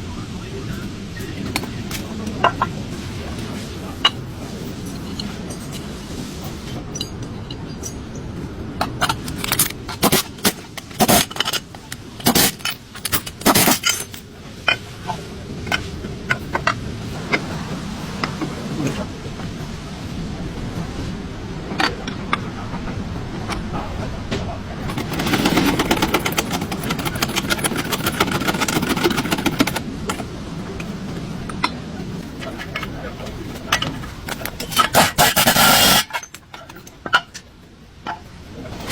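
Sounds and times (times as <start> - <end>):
steady low hum: 0.0 - 38.9
metallic clinks and knocks: 8.8 - 14.8, 24.9 - 30.3
fast ticking clatter: 24.9 - 30.2.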